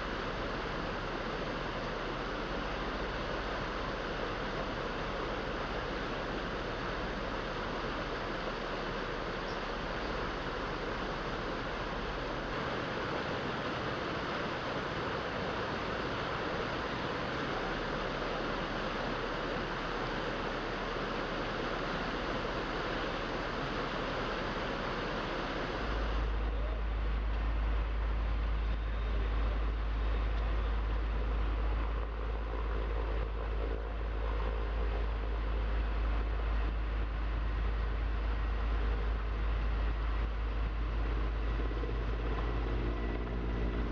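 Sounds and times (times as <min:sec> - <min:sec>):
fast-flowing water rushing: 0:00.0 - 0:28.5.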